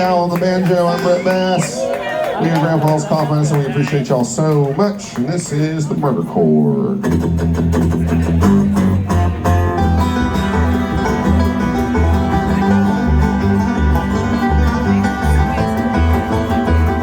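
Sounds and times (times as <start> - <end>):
guitar: 0.0 - 17.0
banjo picking: 6.4 - 17.0
steady bass beat: 7.0 - 17.0.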